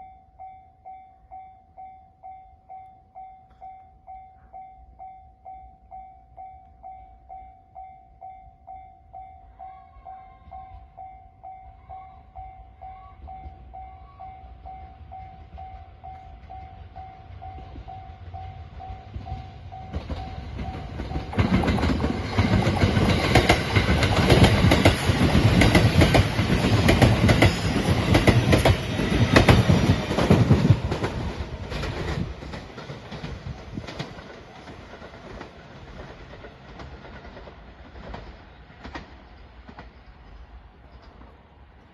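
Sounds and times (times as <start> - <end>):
level-crossing bell ringing: 0.0 - 21.4
train passing: 0.0 - 41.9
train wheels clacking on rail joints: 15.1 - 41.4.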